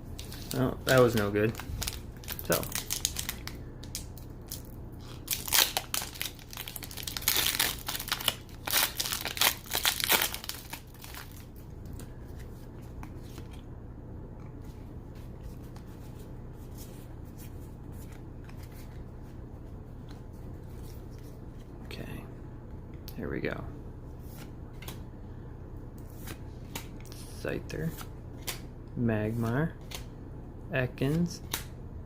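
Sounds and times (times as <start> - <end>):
steady low hum: 0.0 - 32.0
foil wrapper crinkling and tearing: 0.3 - 11.4.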